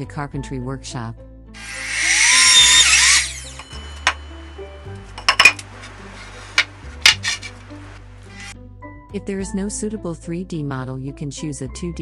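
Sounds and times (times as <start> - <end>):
background music: 0.0 - 12.0
power tool whining: 1.6 - 8.5
knocks and clicks of tools: 5.2 - 5.9, 6.5 - 7.6.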